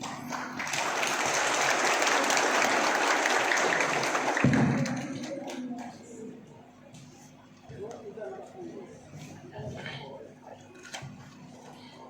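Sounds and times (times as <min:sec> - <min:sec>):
group clapping: 0:00.0 - 0:06.1.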